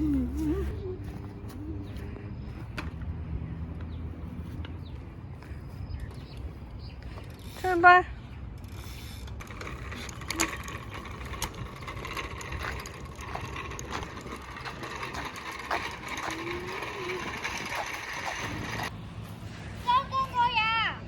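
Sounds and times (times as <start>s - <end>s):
rapid mechanical clicking and rattling: 8.6s - 18.9s.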